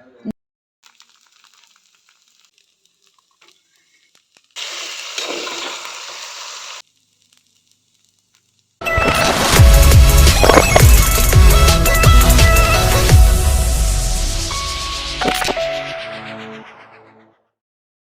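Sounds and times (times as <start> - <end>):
food sizzling in oil: 0.8 - 11.9.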